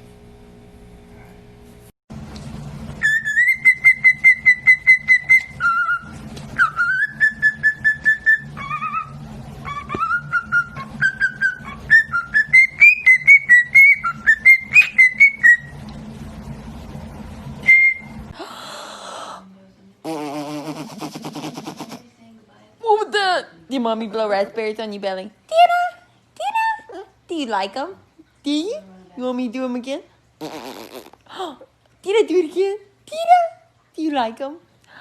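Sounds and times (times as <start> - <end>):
pet bird whistling: 3.0 - 15.7.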